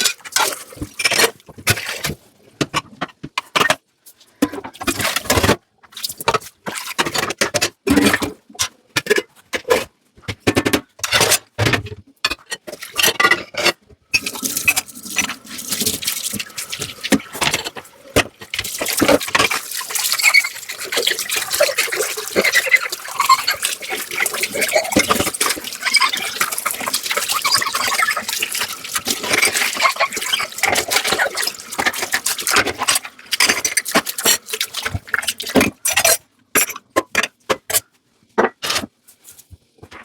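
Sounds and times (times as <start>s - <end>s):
tap water running: 0.0s - 2.2s, 14.1s - 36.1s
scrubbing dishes: 0.0s - 3.8s, 12.2s - 37.8s
dishes clattering: 12.2s - 37.8s.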